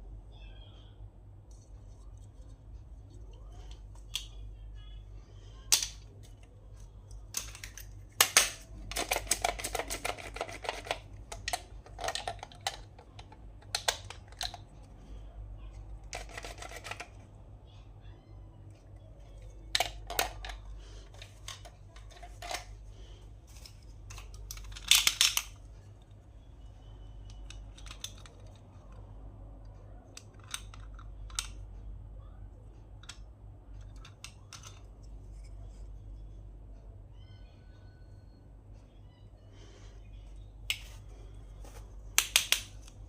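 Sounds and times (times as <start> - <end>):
faint low hum: 0.0 - 43.0
plastic toys clicking: 5.7 - 14.9, 15.8 - 17.3, 18.7 - 22.8, 23.5 - 26.0, 27.2 - 29.0, 30.1 - 31.7, 32.9 - 35.0, 42.2 - 43.0.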